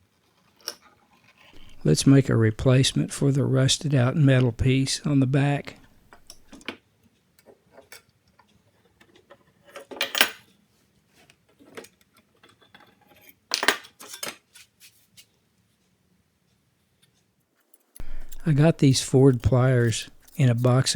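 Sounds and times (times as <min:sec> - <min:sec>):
metal and tools clinking: 0:01.6 - 0:02.2, 0:05.7 - 0:06.6, 0:18.0 - 0:20.9.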